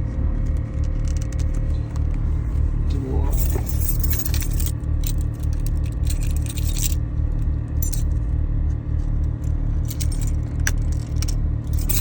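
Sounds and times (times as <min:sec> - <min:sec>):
low steady rumble: 0:00.0 - 0:12.0.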